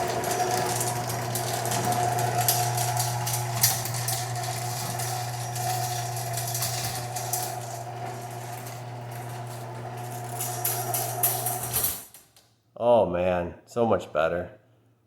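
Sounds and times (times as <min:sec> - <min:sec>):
chain clicking and rattling: 0:00.0 - 0:07.8
garage door motor hum: 0:00.0 - 0:12.2.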